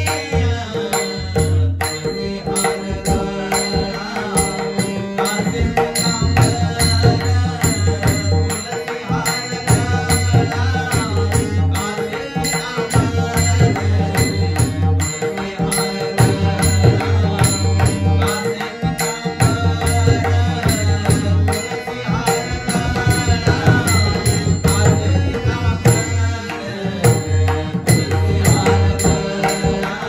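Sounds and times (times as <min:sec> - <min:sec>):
man singing devotional song: 0:00.0 - 0:30.0
quick metallic beat: 0:00.0 - 0:30.0.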